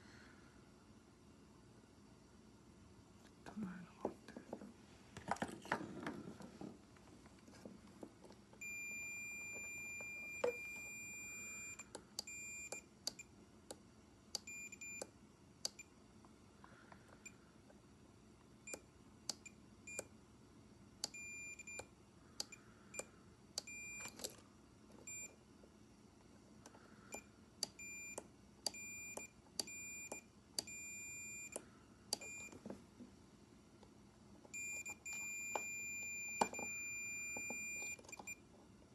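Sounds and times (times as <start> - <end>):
multimeter continuity beeps: 8.6 - 13.3, 14.4 - 15.1, 21.0 - 24.3, 25.1 - 25.4, 27.1 - 32.6, 34.5 - 38.4.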